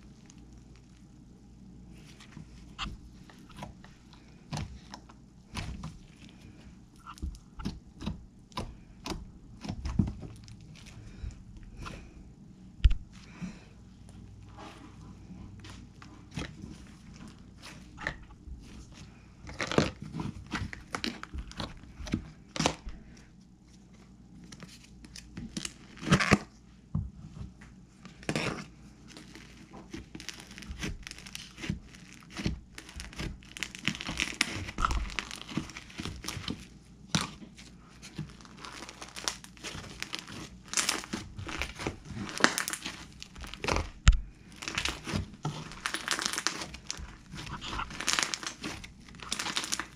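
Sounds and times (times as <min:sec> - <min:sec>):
slime popping and crackling: 0:29.1 - 0:37.4, 0:38.0 - 0:49.9.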